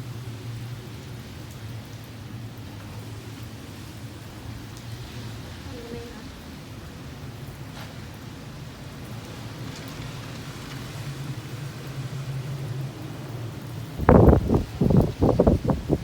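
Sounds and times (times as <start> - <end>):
rain: 0.0 - 16.0
wind: 0.0 - 16.0.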